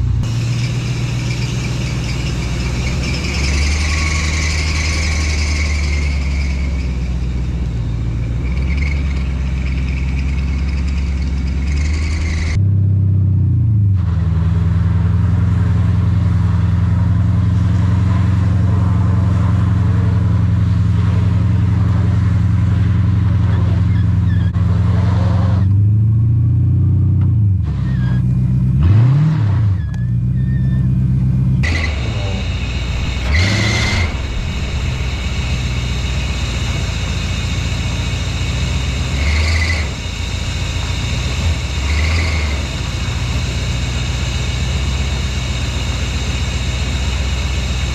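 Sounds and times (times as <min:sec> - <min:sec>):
car engine running: 0:00.0 - 0:12.6, 0:29.8 - 0:47.9
steady hiss: 0:32.4 - 0:39.6.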